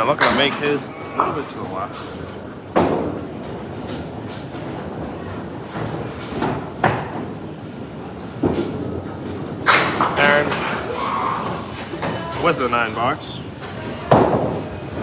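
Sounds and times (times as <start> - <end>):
balls hitting pins clatter: 0.0 - 3.2, 9.6 - 10.9
bowling balls rolling on lanes: 0.0 - 15.0.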